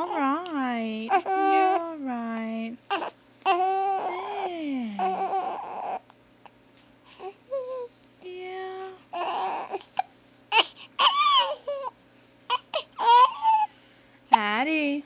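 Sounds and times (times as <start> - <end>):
whimpering cries: 0.0 - 0.4, 1.0 - 2.0, 2.9 - 6.1, 7.1 - 7.9, 8.9 - 13.8.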